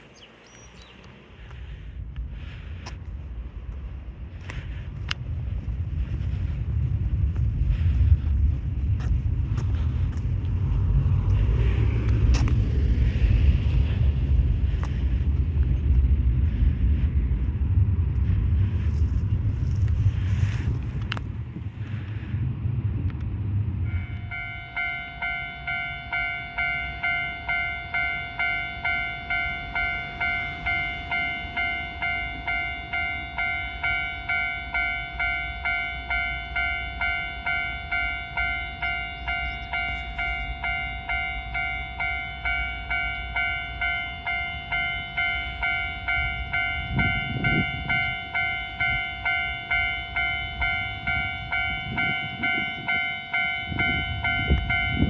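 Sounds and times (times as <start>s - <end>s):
low rumble: 0.7s - 55.0s
level-crossing electronic bell: 23.9s - 55.0s.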